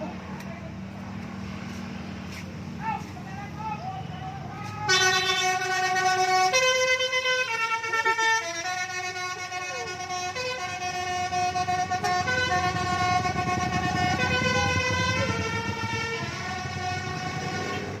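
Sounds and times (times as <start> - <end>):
bus engine rumbling: 0.0 - 18.0
musical air horn playing tune: 4.7 - 18.0.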